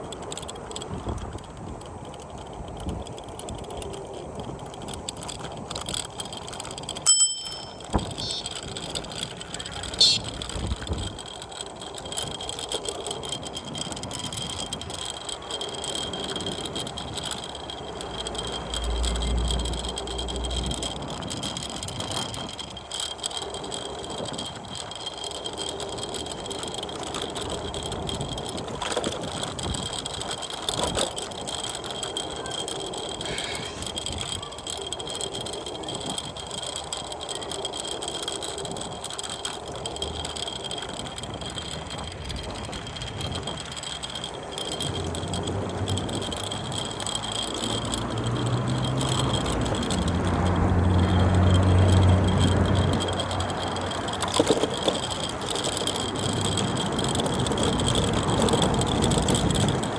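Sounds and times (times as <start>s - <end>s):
scooter wheels rattling on paving: 0.0s - 59.9s
thin high whine: 7.1s - 8.6s.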